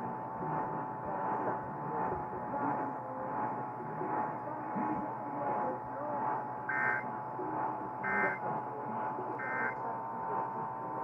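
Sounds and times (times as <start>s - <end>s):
buzzy digital code squawks: 6.7s - 7.1s, 8.0s - 8.4s, 9.4s - 9.8s.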